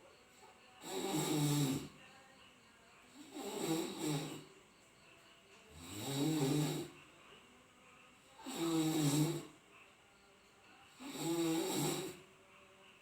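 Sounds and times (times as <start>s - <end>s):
person snoring loudly: 0.8s - 2.0s, 3.2s - 4.4s, 5.7s - 7.0s, 8.4s - 9.5s, 11.0s - 12.2s.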